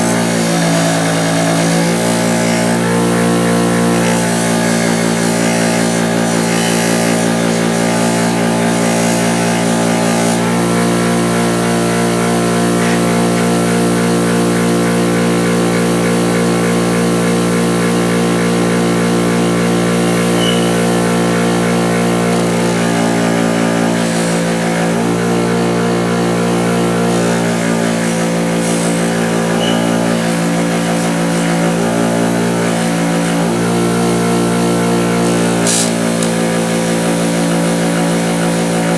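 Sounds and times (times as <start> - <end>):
wire wheel motor running: 0.0 - 38.9
pliers against wire wheel: 20.4 - 20.9, 27.3 - 31.9.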